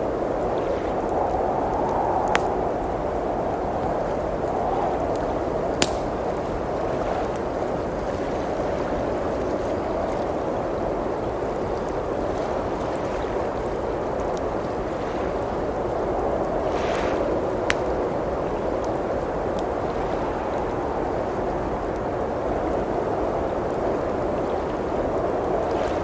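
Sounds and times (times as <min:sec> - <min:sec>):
rushing blizzard wind: 0:00.0 - 0:26.0
wood fire crackling: 0:00.1 - 0:08.0, 0:13.4 - 0:19.8
fire popping: 0:01.0 - 0:07.5, 0:16.4 - 0:18.8.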